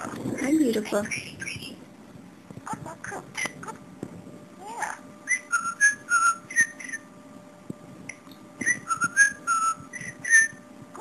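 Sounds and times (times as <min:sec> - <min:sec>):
budgerigar whistling a tune: 0:05.2 - 0:07.1, 0:08.6 - 0:10.6.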